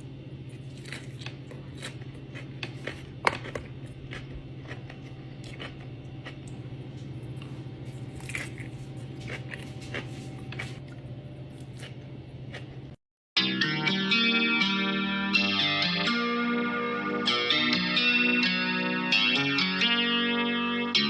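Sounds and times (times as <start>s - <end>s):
steady low hum: 0.0s - 13.0s
biting and chewing: 0.5s - 12.8s.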